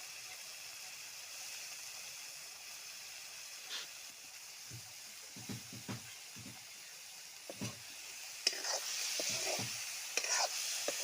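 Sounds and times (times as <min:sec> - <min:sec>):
food sizzling in a pan: 0:00.0 - 0:11.0
soft knocks: 0:04.7 - 0:06.6.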